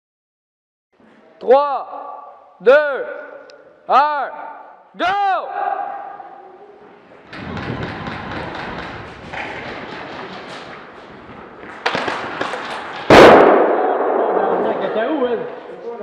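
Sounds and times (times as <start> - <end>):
thumps and knocks of movement: 7.3 - 13.1.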